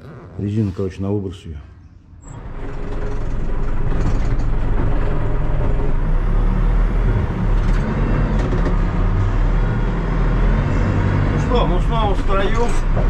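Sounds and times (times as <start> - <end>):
diesel engine droning: 2.3 - 13.0.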